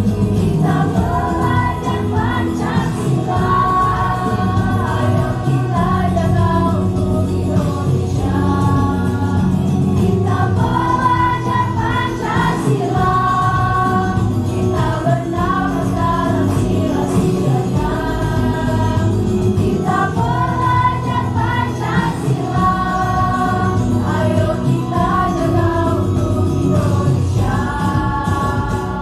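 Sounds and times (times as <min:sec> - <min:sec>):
choir singing sustained notes: 0:00.5 - 0:29.0.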